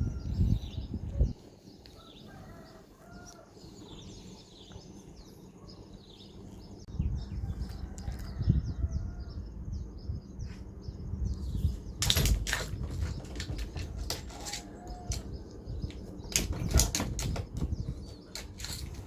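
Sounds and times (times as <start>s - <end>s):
birds chirping: 0.0s - 19.0s
flapping or rustling: 11.6s - 19.0s.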